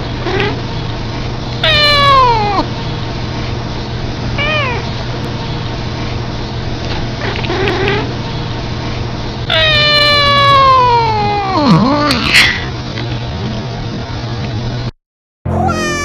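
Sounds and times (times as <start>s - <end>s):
cat chirp: 1.6s - 2.6s, 4.4s - 4.9s, 9.5s - 11.8s, 15.6s - 16.0s.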